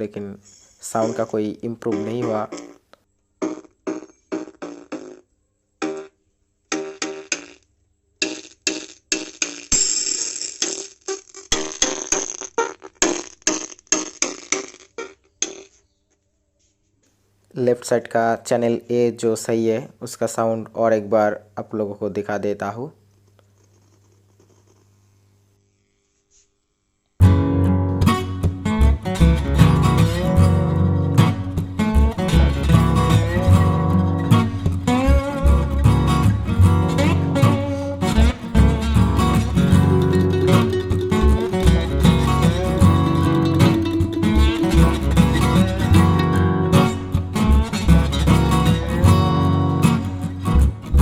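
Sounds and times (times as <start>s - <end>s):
choked weak music from speaker: 1.0s - 5.2s, 27.2s - 51.0s.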